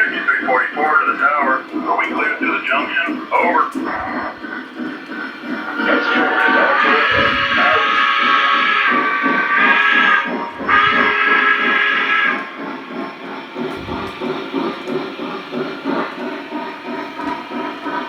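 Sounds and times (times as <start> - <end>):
rhythmic steam chuffing: 0.0 - 18.0
model train chime whistle: 5.8 - 12.6.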